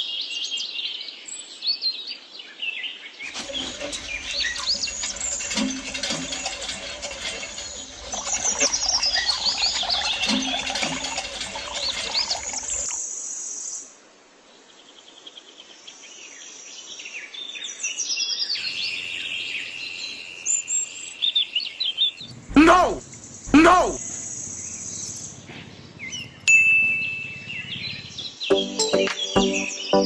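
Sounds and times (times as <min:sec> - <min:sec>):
birds chirping: 0:03.3 - 0:13.0, 0:18.6 - 0:30.0.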